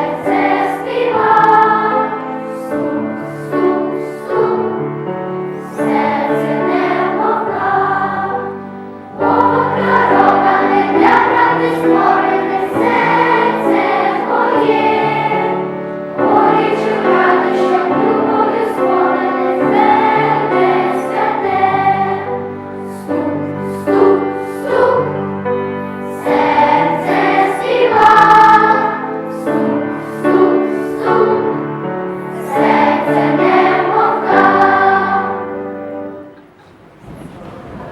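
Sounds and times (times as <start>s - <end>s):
choir singing: 0.0s - 36.4s.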